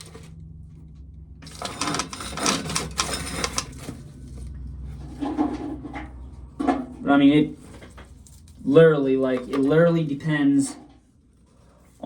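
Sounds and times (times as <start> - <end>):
corn sheller rattling: 1.4 - 4.0.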